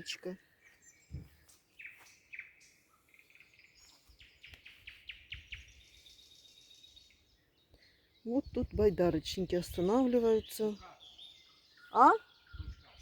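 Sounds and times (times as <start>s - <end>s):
faint songbird calls: 0.0s - 13.0s.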